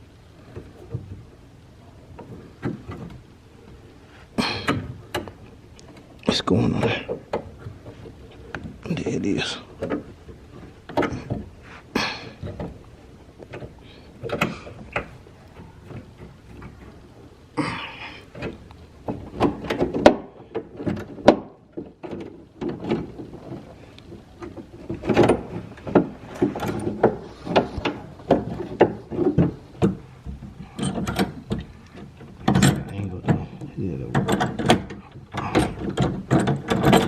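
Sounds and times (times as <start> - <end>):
clicks and scrapes on window glass: 18.0 - 37.0.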